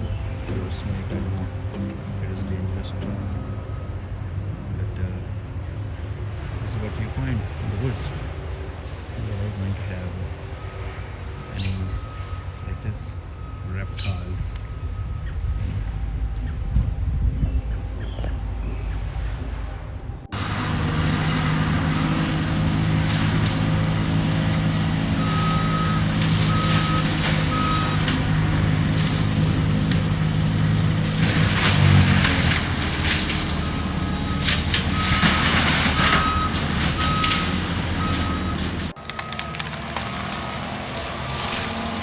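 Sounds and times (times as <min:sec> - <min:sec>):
reversing alarm beeping: 0:00.0 - 0:04.5, 0:10.6 - 0:30.2, 0:31.3 - 0:39.7
diesel engine running hard: 0:00.0 - 0:42.0
wood crackling and splintering: 0:14.2 - 0:42.0.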